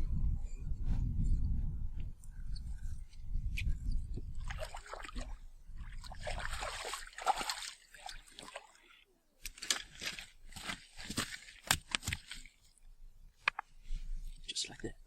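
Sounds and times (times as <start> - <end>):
water splashing and sloshing: 4.2 - 12.9.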